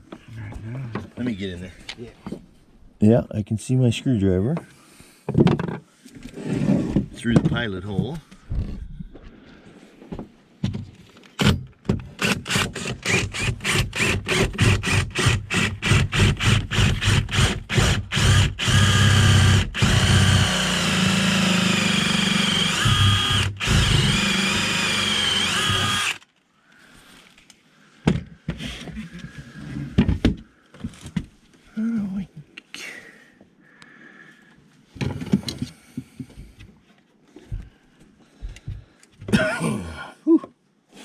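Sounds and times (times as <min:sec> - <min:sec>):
cordless drill with hole saw: 0:12.2 - 0:26.3.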